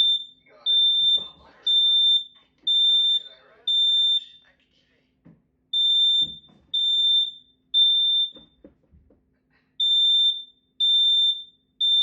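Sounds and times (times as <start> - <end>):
high-pitched alarm beeps: 0.0 - 4.4, 5.7 - 8.6, 9.8 - 12.0.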